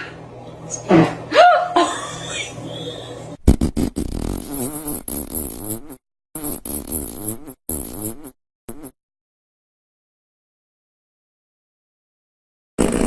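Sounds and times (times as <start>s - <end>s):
baby farting: 3.4s - 9.0s, 12.8s - 13.0s.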